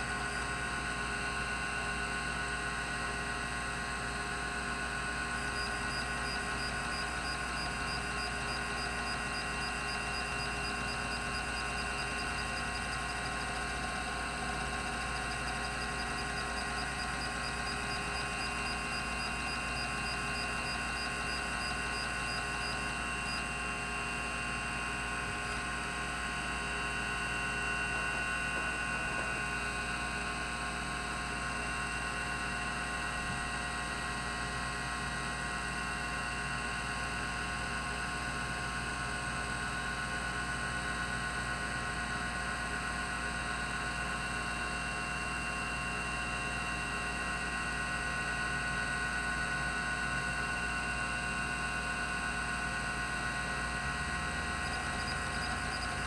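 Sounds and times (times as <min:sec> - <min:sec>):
hard drive whine and hum: 0:00.0 - 0:56.0
faint ticking: 0:05.4 - 0:23.4, 0:54.4 - 0:56.0.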